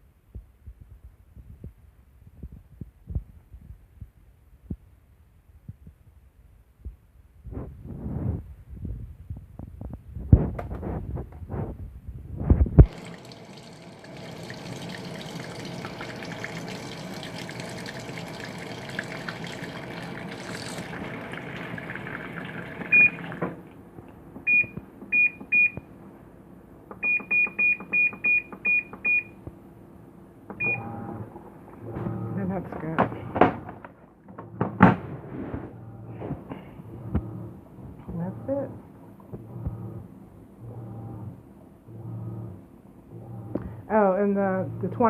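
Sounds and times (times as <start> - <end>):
water running into tub: 12.8 - 23.8
control panel beeps: 24.5 - 25.8, 27.0 - 29.4
washing machine knocks and clunks: 31.9 - 35.2.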